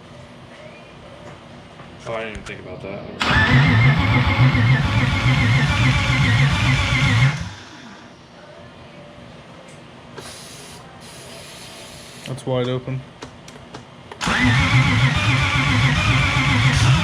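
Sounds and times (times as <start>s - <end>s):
engine cranking without starting: 3.2s - 7.5s, 14.2s - 17.0s
starter motor whine: 3.2s - 7.6s, 14.2s - 17.0s.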